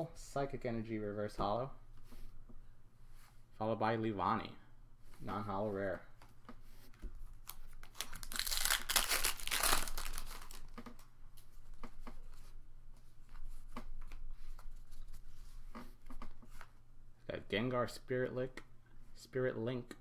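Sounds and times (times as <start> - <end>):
wrapper tearing and crinkling: 7.4 - 11.1
cards clicking and rustling: 7.5 - 11.1.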